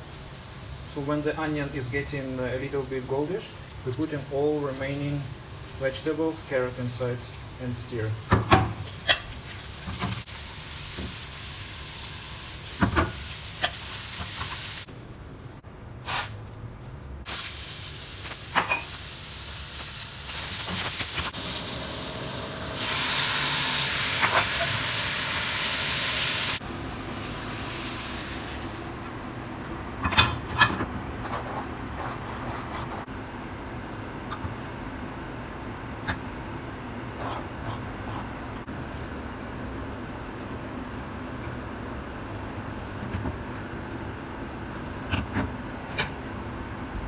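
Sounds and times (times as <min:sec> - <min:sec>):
vegetables sizzling in a pan: 0:00.0 - 0:01.0, 0:02.3 - 0:14.9, 0:17.3 - 0:29.6.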